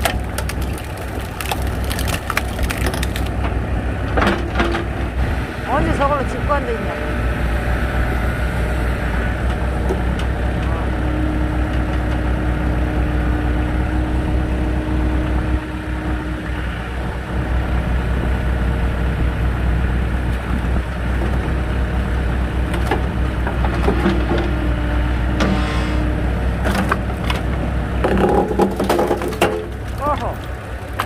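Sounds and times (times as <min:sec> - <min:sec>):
wood cracking and snapping: 0:00.0 - 0:03.5, 0:26.6 - 0:31.0
log splitter engine running: 0:00.0 - 0:31.0.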